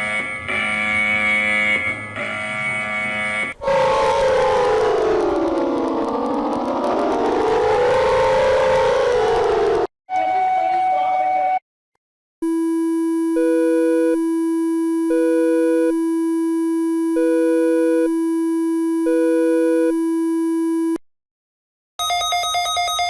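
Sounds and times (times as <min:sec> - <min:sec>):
rapidly pulsing alarm tone: 0:00.0 - 0:09.9, 0:12.4 - 0:21.0
steady electronic alarm tone: 0:00.0 - 0:09.9, 0:12.4 - 0:21.0.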